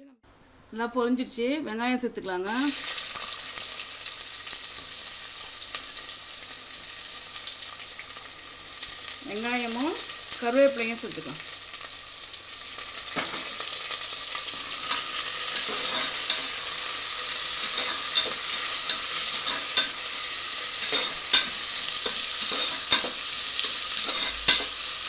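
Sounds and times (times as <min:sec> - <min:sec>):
onions sizzling in hot oil: 0:02.5 - 0:25.0
spoon scraping a pot: 0:14.5 - 0:16.7, 0:17.4 - 0:20.0, 0:20.7 - 0:24.8.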